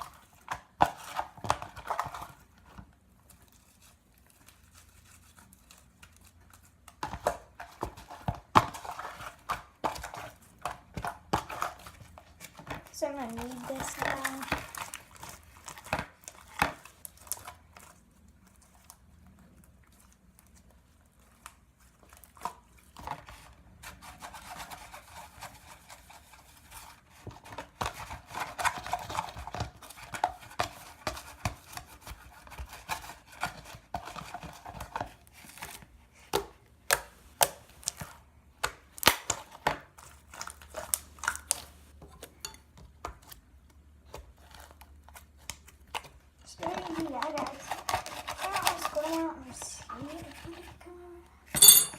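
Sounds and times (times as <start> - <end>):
slime rubbing and crinkling: 0.1 - 6.9, 43.5 - 51.1.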